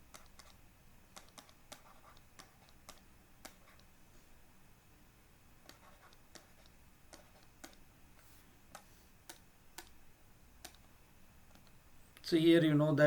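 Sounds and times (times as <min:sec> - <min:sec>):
faint sharp clicks: 0:10.6 - 0:10.8.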